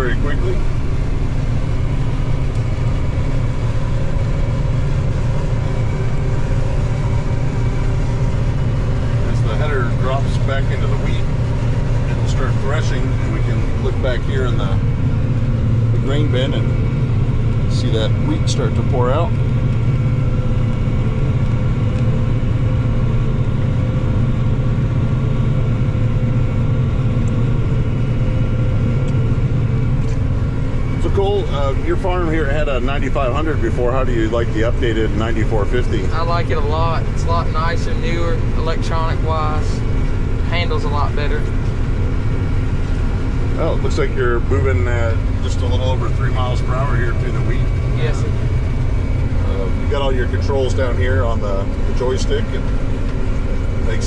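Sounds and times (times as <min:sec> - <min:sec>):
combine engine and machinery humming: 0:00.0 - 0:54.0
faint whining tones: 0:00.0 - 0:54.0.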